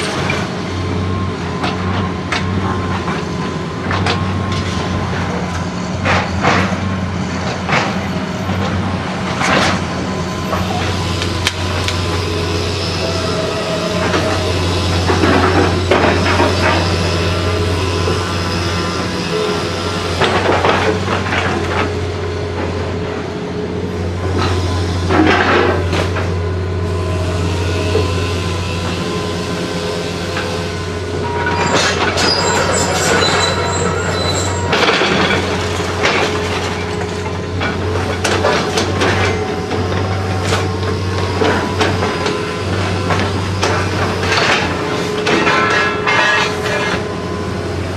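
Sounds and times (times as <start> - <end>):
demolition machinery running: 0.0 - 47.9
high metal squealing: 9.9 - 20.9, 26.8 - 38.0, 38.6 - 47.9
debris crashing and clattering: 43.6 - 47.0.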